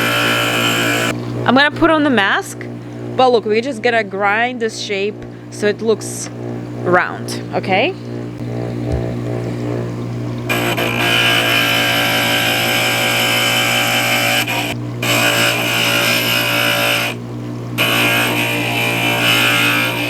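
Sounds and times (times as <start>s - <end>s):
glass grinding high whine: 0.0s - 1.2s, 10.5s - 17.2s, 17.8s - 20.0s
grinder motor hum: 0.0s - 20.0s.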